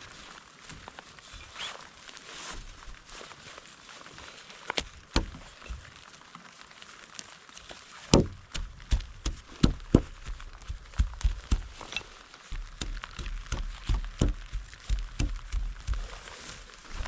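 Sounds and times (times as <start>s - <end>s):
sharp knocks and thuds: 4.8s - 5.9s, 8.1s - 17.0s.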